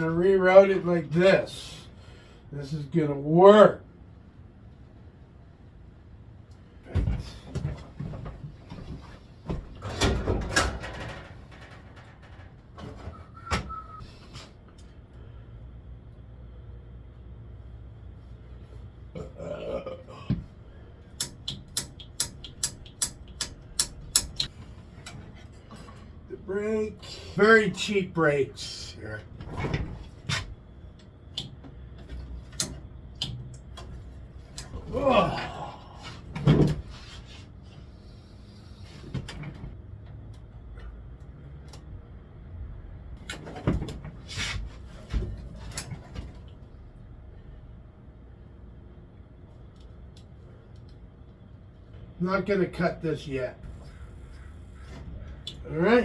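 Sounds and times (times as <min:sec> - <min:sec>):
bike parts and tools rattling: 0:09.7 - 0:14.0, 0:20.9 - 0:26.3
short grunt: 0:19.2 - 0:20.4, 0:34.8 - 0:36.2.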